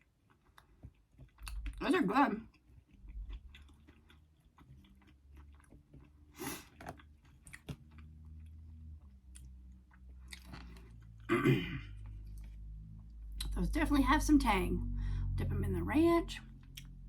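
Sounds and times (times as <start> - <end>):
person chewing: 0.0 - 1.8, 2.5 - 11.3, 11.9 - 12.7, 16.6 - 17.0.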